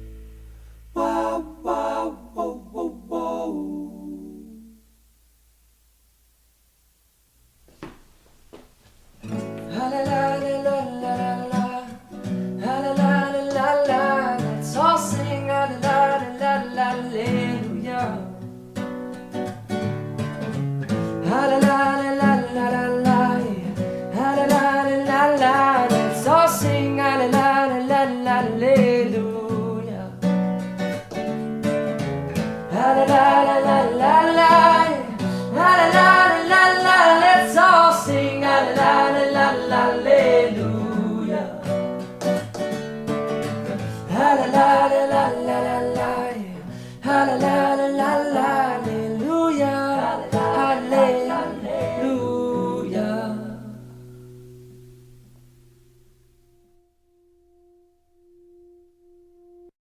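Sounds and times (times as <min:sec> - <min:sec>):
acoustic guitar: 0:00.0 - 0:59.7
person singing: 0:00.9 - 0:04.9, 0:09.7 - 0:18.4, 0:21.2 - 0:30.2, 0:32.7 - 0:42.0, 0:43.8 - 0:53.9.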